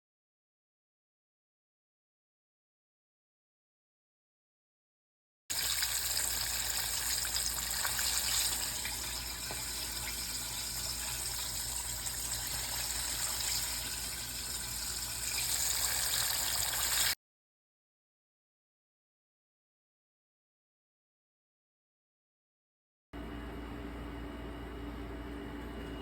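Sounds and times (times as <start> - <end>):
hot oil sizzling and bubbling: 5.5 - 17.2.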